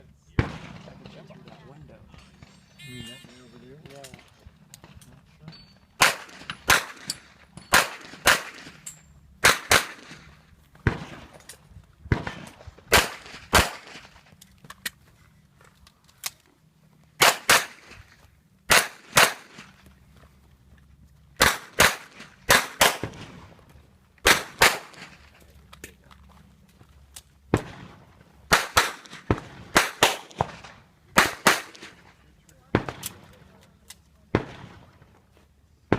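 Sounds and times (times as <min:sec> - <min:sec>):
pistol shots: 0:06.0 - 0:08.7, 0:09.4 - 0:10.2, 0:18.7 - 0:19.5, 0:28.5 - 0:30.5, 0:31.2 - 0:31.9.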